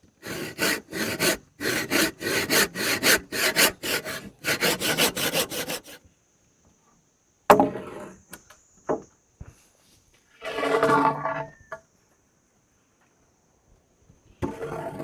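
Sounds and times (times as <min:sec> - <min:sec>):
hand saw cutting wood: 0:00.2 - 0:06.0.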